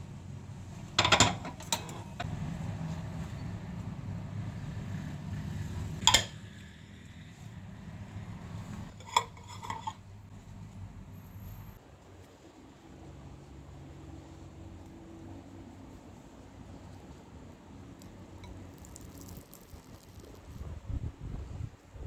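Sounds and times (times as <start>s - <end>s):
steady low hum: 0.0s - 22.0s
metal utensils clattering on dishes: 1.0s - 2.2s, 8.9s - 10.0s.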